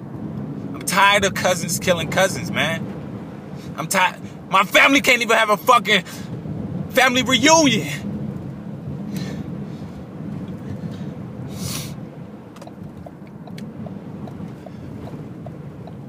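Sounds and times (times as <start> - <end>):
vehicle engine rumble: 0.0 - 16.0
faint regular ticking: 12.6 - 16.0.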